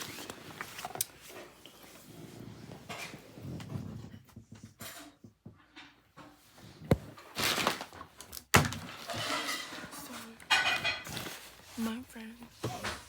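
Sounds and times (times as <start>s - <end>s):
rustling handling noise: 0.0s - 3.4s, 6.4s - 13.0s.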